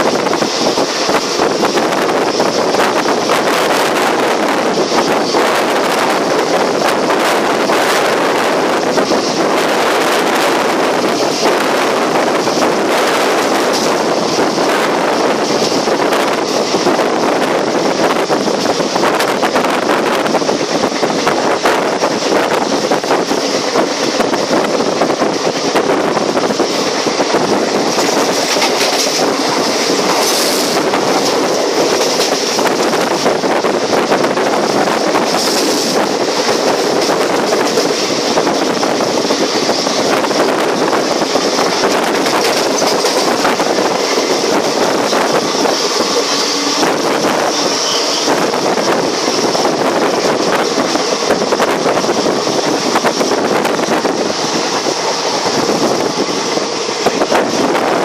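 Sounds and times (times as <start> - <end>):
train wheel and rail noise: 0.0 - 58.0.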